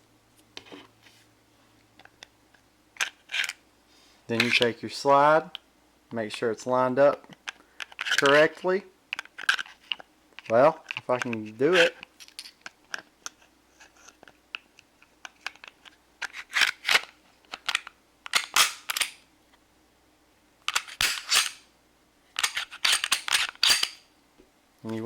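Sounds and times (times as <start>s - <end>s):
pistol slide scraping: 16.2s - 17.1s, 17.7s - 19.2s, 20.7s - 21.7s, 22.4s - 24.1s
pistol slide metallic clicks: 18.3s - 19.2s, 20.7s - 21.6s, 22.4s - 24.0s.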